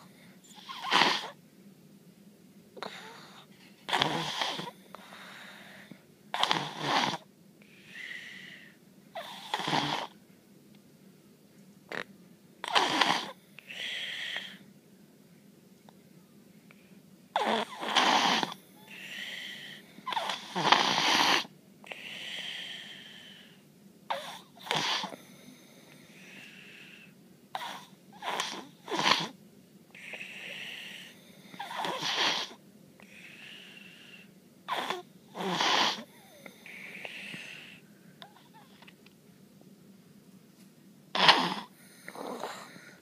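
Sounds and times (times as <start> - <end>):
baby snoring loudly: 0.6 - 1.4, 3.9 - 4.8, 6.4 - 7.3, 8.0 - 10.2, 12.6 - 14.6, 17.4 - 25.2, 27.6 - 29.4, 30.0 - 37.8, 41.1 - 43.0
soft high-pitched breath: 36.0 - 38.8.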